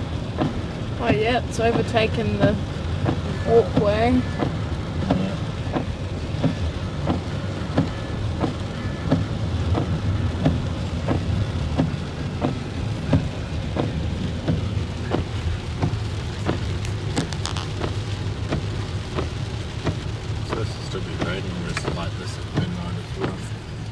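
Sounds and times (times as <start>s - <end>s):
heavy rain: 0.0s - 23.9s
low continuous rumble: 0.0s - 23.9s
regular ticking: 0.0s - 23.9s
brief crackle: 16.5s - 18.0s.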